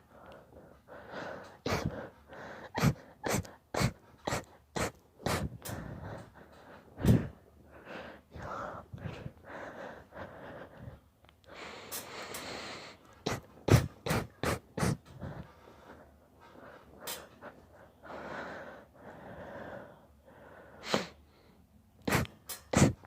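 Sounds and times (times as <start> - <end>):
gasping panting breaths: 0.0 - 23.0
man sneezing: 22.1 - 23.0.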